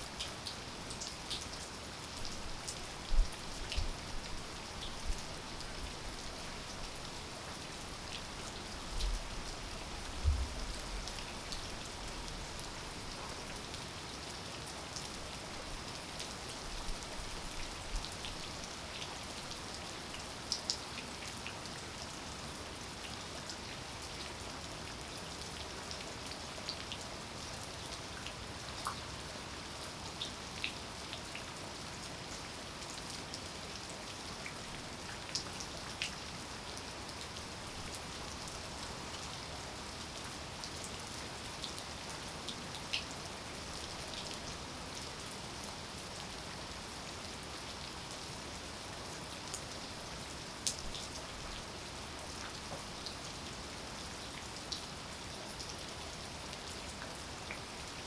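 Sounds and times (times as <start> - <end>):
raindrops pattering close by: 0.0 - 22.0
steady rain falling: 0.0 - 58.0.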